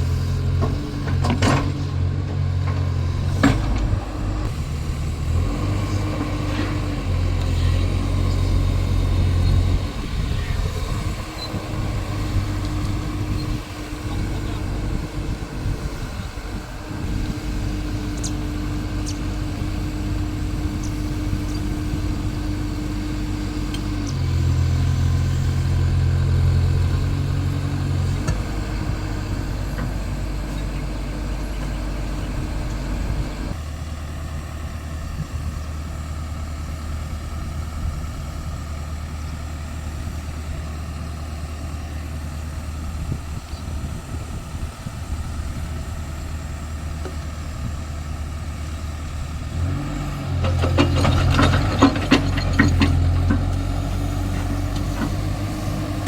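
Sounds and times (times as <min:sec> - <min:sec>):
excavator diesel engine running: 0:00.0 - 0:56.0.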